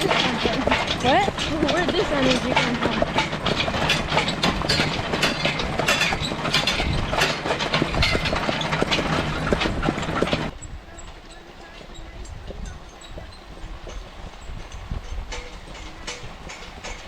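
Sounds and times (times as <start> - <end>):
metal track clanking and scraping: 0.0 - 17.0.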